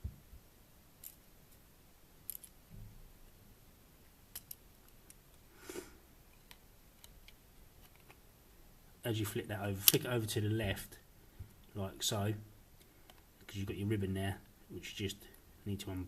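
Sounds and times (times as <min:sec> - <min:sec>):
small clicks and taps of phone parts: 0:06.4 - 0:08.2, 0:12.8 - 0:13.3.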